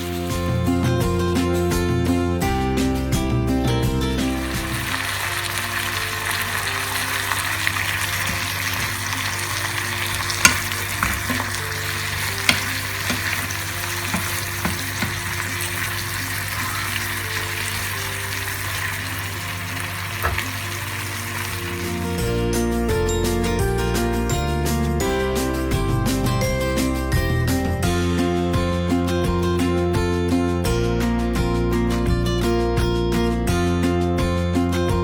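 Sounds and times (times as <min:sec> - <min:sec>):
food sizzling in a frying pan: 0:00.0 - 0:00.6, 0:04.1 - 0:22.4
utensil clinking against pan: 0:07.8 - 0:17.0.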